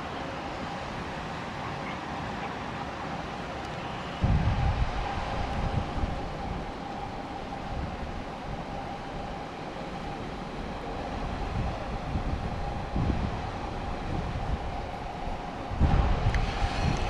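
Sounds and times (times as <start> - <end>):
steady rushing background: 0.0 - 17.0
wind buffeting microphone: 3.5 - 17.0.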